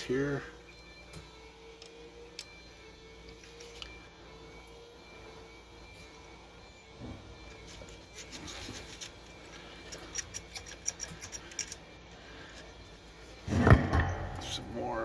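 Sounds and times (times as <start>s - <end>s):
metal parts clicking and rubbing: 1.7s - 4.0s, 7.5s - 13.0s.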